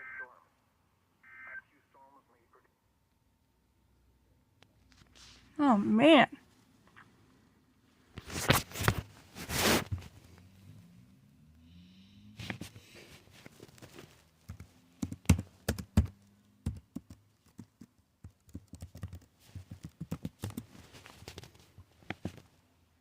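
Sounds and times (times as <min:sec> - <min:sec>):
sharp clicks and taps: 0:14.4 - 0:20.7.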